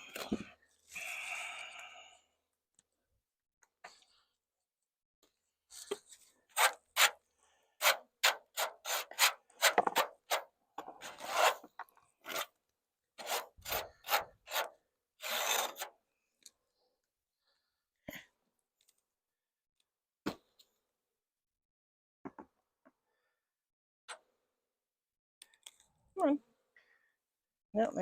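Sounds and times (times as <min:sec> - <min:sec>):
tool scraping wood: 0:06.5 - 0:07.2, 0:07.8 - 0:12.5, 0:13.2 - 0:15.9.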